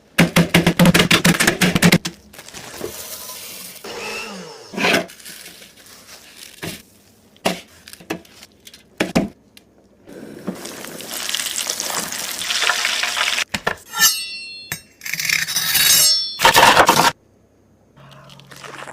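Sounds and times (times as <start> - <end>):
hot oil sizzling: 10.6 - 13.5
ringing metal clink: 13.9 - 15.0, 15.6 - 16.4.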